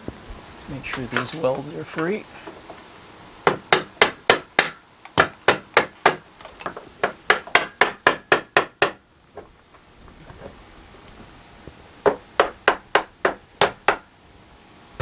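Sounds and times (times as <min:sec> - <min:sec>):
hammer striking steel: 0:03.5 - 0:06.2, 0:07.0 - 0:09.0.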